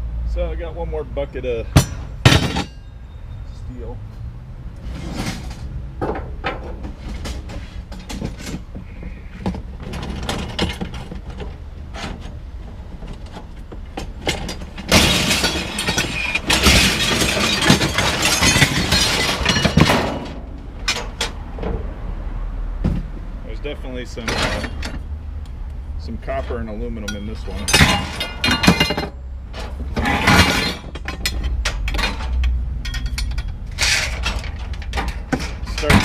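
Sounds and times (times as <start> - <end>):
scrap metal clattering together: 1.8 - 2.8, 4.8 - 12.4, 13.0 - 21.4, 24.2 - 25.0, 27.4 - 36.0
scrap metal clinking: 13.2 - 21.4, 24.2 - 25.0, 26.4 - 36.0.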